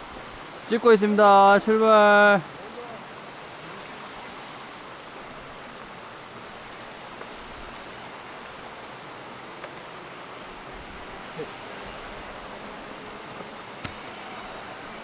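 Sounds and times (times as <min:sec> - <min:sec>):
stream water rushing: 0:00.0 - 0:15.0
faint ticks: 0:06.6 - 0:09.9.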